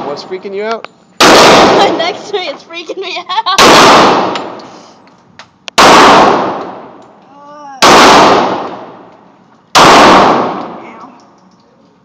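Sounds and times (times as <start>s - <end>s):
pistol shots echoing indoors: 5.8s - 6.8s, 7.8s - 9.0s, 9.8s - 10.8s.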